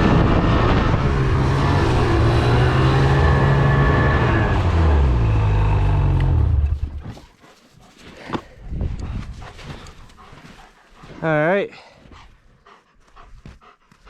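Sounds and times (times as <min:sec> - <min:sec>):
snowmobile engine running: 0:00.0 - 0:07.2.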